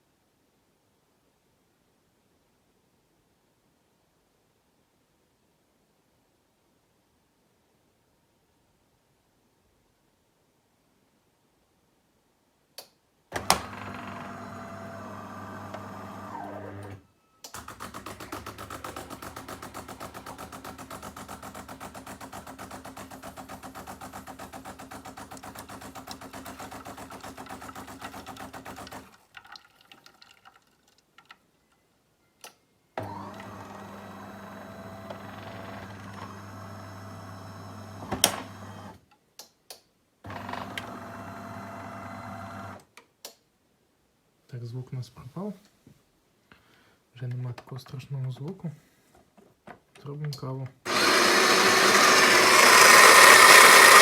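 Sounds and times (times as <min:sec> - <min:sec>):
coffee machine motor running: 0:13.4 - 0:17.0, 0:17.6 - 0:29.0, 0:50.9 - 0:54.0.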